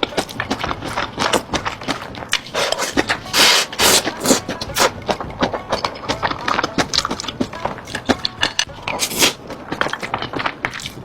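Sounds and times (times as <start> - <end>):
crunching food: 0.0 - 11.0
person chewing: 0.0 - 11.0.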